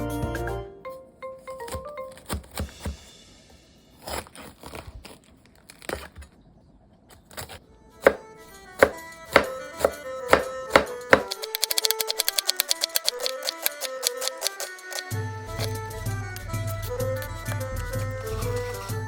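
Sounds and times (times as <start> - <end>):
background music light notes: 0.0 - 4.1, 7.6 - 19.0
sharp knocks: 8.1 - 11.3.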